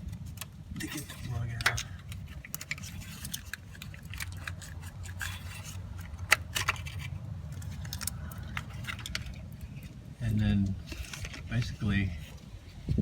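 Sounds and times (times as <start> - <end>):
plastic connector clicks and scrapes: 0.0 - 10.0, 10.6 - 12.4.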